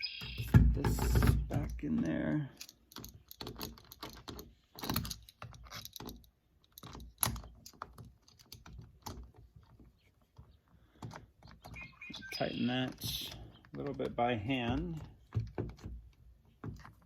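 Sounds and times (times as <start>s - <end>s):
small metal clicks and rattles: 0.8s - 11.9s.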